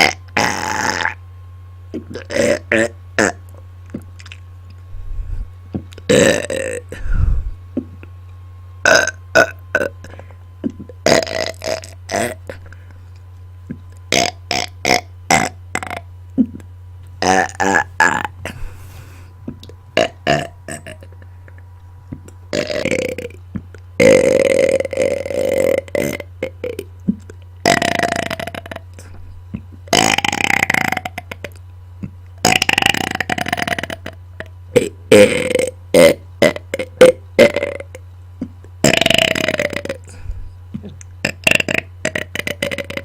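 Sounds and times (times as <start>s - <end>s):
person belching: 0.0s - 1.2s, 1.9s - 3.4s, 6.0s - 7.1s, 8.8s - 12.7s, 14.1s - 16.6s, 17.2s - 19.2s, 20.0s - 21.2s, 22.2s - 23.4s, 24.0s - 29.2s, 29.8s - 31.6s, 32.4s - 38.0s, 38.8s - 43.0s.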